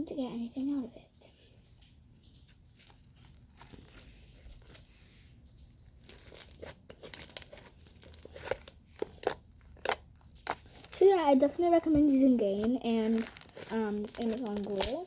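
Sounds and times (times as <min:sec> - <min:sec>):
bag crinkling and tearing: 0:05.8 - 0:11.6, 0:12.8 - 0:15.0.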